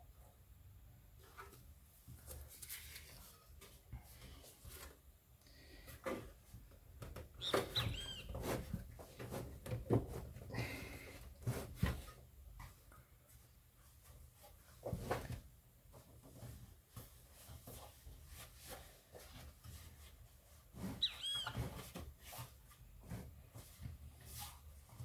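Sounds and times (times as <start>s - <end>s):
brief high squeaks: 7.4s - 8.5s, 21.0s - 21.8s.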